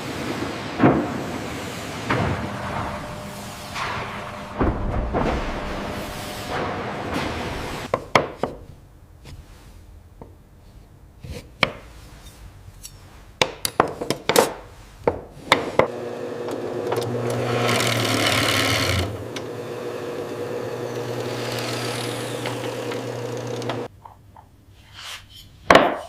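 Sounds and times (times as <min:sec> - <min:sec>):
woodworking machine humming: 0:02.1 - 0:07.9, 0:15.9 - 0:23.9
loud machining rush: 0:17.4 - 0:23.9.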